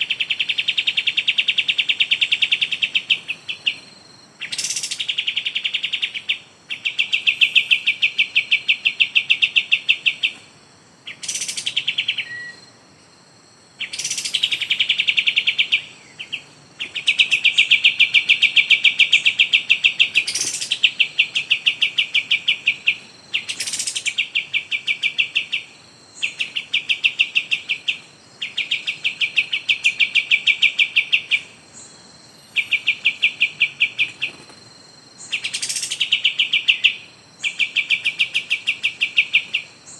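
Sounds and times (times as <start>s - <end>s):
bird shrill chirping trill: 4.4s - 10.4s, 11.1s - 12.7s, 35.2s - 39.9s.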